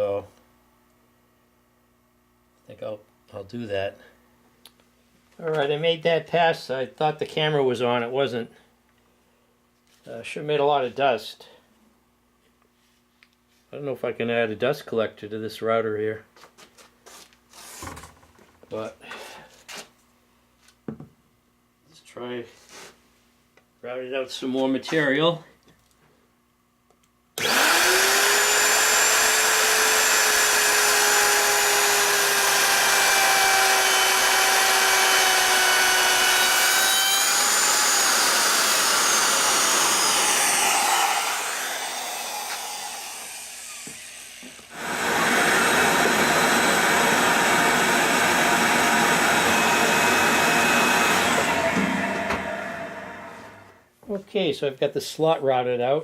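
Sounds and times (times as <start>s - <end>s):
router whining: 27.4s - 53.8s.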